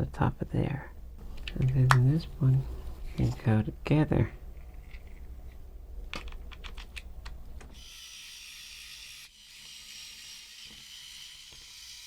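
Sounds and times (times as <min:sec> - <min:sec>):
faint steady hiss: 0:00.0 - 0:07.8
plastic parts clicking: 0:06.1 - 0:07.4.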